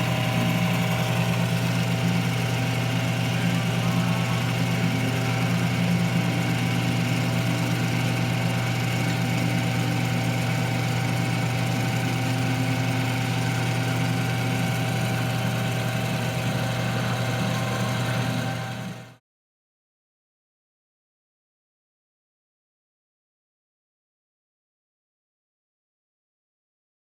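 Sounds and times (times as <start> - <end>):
metal lathe humming: 0.0 - 19.2.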